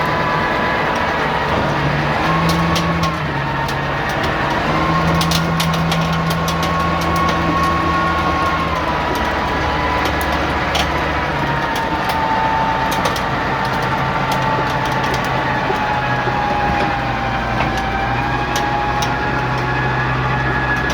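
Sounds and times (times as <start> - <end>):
diesel engine running with whine: 0.0 - 20.9.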